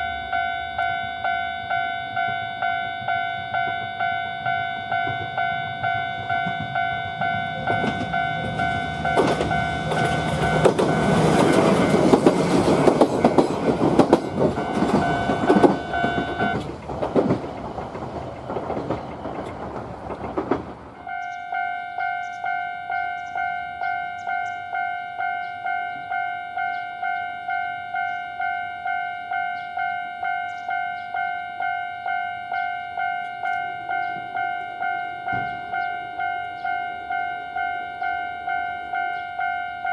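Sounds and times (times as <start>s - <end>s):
level-crossing alarm ringing: 0.0s - 19.0s, 21.0s - 39.9s
train wheels clattering over rail joints: 4.9s - 21.1s.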